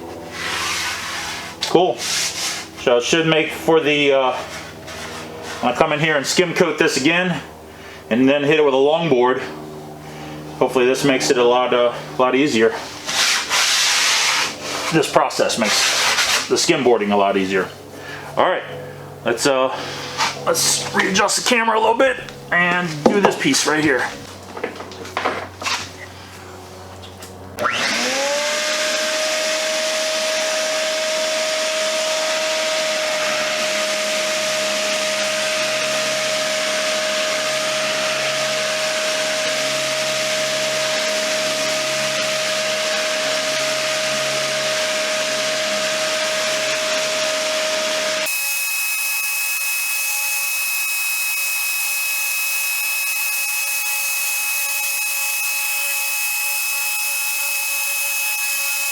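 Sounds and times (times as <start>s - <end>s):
orbital sander whining: 0.0s - 18.4s, 19.0s - 25.3s, 25.9s - 58.9s
higher thin whine: 0.0s - 24.3s, 33.1s - 58.9s.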